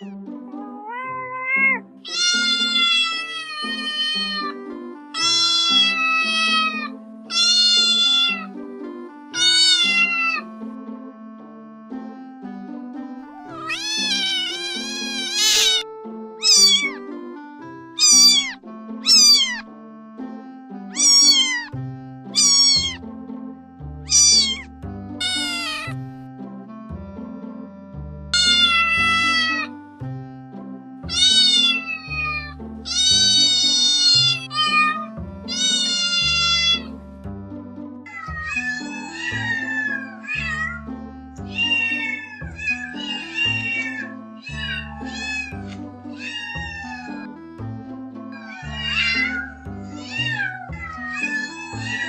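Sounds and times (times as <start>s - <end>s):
cat meowing: 0.0s - 4.6s, 5.2s - 8.6s, 9.4s - 10.5s, 13.4s - 17.0s, 18.0s - 19.6s, 20.9s - 23.0s, 24.1s - 26.0s, 28.4s - 29.8s, 31.1s - 37.0s, 38.1s - 47.4s, 48.3s - 52.0s
background music with bass: 8.4s - 38.8s, 40.4s - 42.9s, 43.5s - 51.2s.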